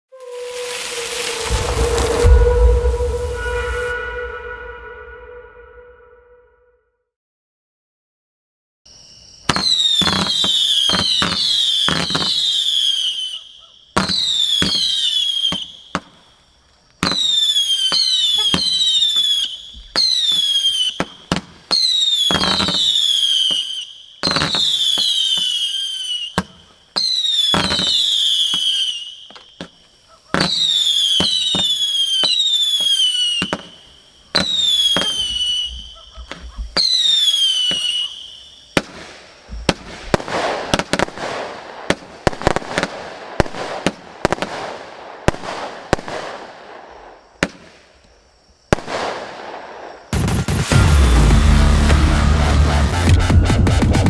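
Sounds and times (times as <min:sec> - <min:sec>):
firework whistles sliding down: 0:00.1 - 0:06.4, 0:09.5 - 0:16.1, 0:17.0 - 0:41.3
firework launch thuds: 0:00.3 - 0:04.9.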